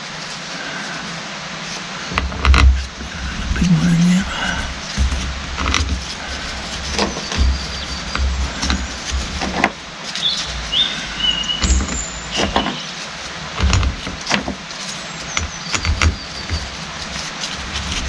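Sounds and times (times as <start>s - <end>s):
dull thuds: 4.8s - 9.9s, 13.5s - 14.7s
metal parts clicking and knocking: 11.6s - 12.8s, 13.6s - 18.0s.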